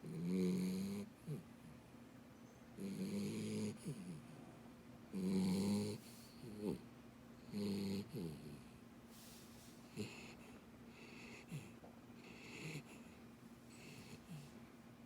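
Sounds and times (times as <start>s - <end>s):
puppy snoring loudly: 0.0s - 1.8s, 2.8s - 4.4s, 5.1s - 8.8s, 9.9s - 14.6s.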